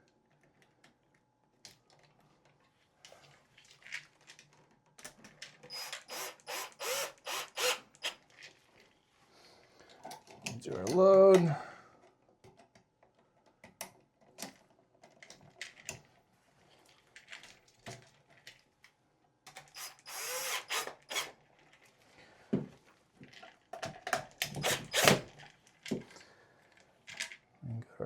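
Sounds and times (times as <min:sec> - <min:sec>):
cordless drill driving a screw: 0:05.6 - 0:08.2, 0:19.5 - 0:21.4, 0:24.4 - 0:25.4.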